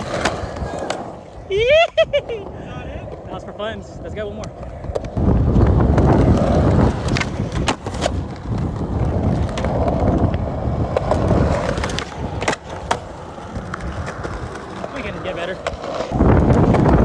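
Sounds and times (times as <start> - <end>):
skateboard wheels rolling on concrete: 0.0 - 17.0
skateboard clacking on ground: 4.3 - 17.0.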